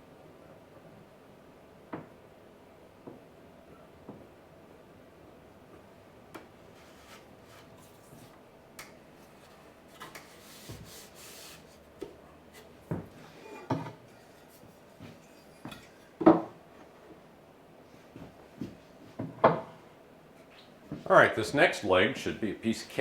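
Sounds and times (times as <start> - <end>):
wood rubbing: 6.7 - 16.1.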